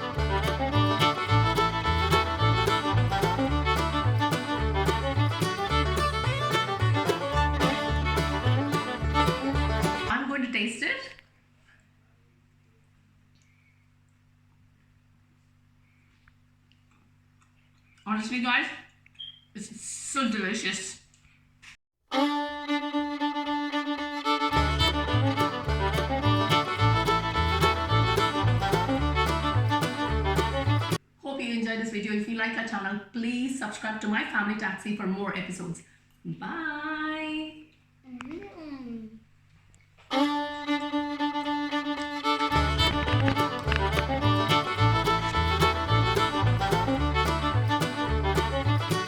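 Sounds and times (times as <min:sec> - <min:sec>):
instrumental music: 0:00.0 - 0:10.1, 0:22.1 - 0:31.0, 0:40.1 - 0:49.0
bass line and beat: 0:00.1 - 0:10.1, 0:24.6 - 0:31.0, 0:42.5 - 0:49.0
deep bass line and beat: 0:42.5 - 0:49.0.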